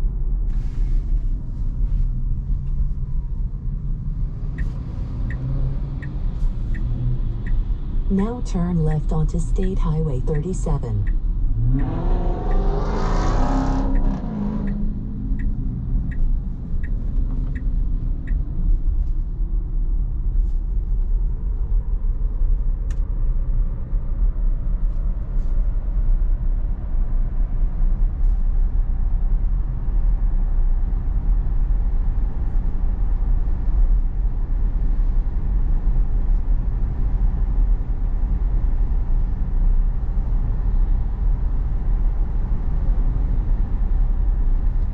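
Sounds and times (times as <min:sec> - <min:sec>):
road and tyre rumble: 0:00.0 - 0:44.9
turn signal ticking: 0:02.6 - 0:19.6.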